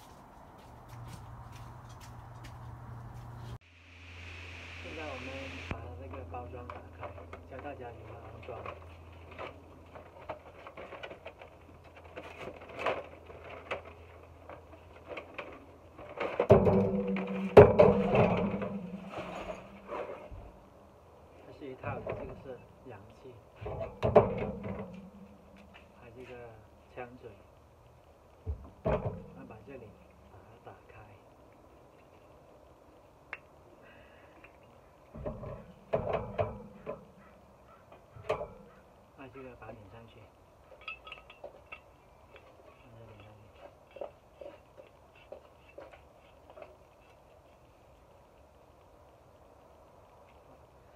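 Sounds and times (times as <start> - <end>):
knocks: 16.5 - 19.9, 23.7 - 25.4.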